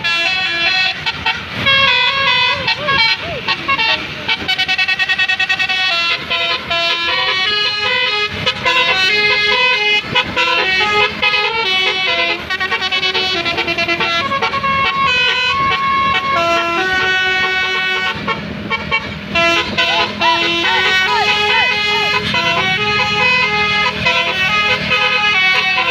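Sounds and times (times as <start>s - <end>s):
bus horns playing tunes: 0.0s - 25.9s.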